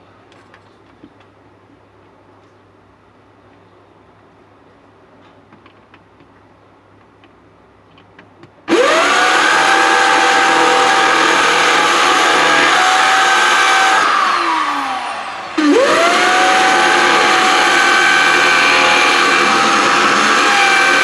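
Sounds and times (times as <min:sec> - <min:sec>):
power tool motor whining: 0:08.7 - 0:21.0.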